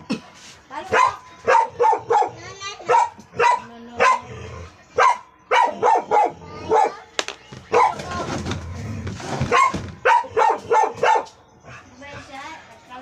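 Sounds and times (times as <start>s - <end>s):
dog barking: 0.9s - 4.3s, 5.0s - 7.0s, 7.7s - 8.0s, 9.4s - 11.9s.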